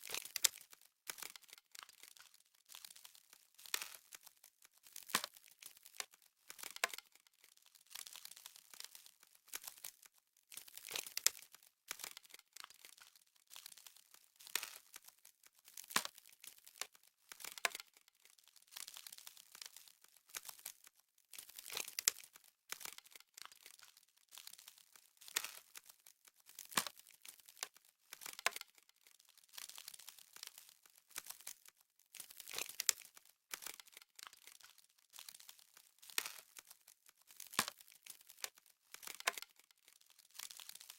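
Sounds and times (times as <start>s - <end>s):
icy crackling and crinkling: 0.0s - 40.9s.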